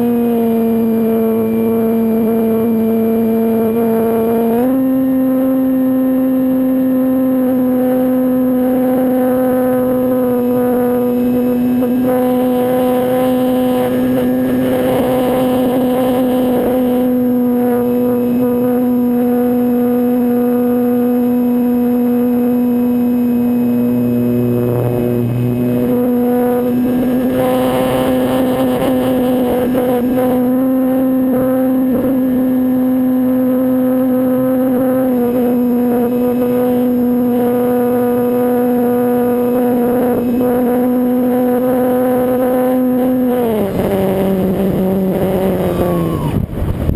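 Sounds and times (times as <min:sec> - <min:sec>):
model plane motor running: 0:00.0 - 0:46.9
wind noise: 0:43.6 - 0:46.9.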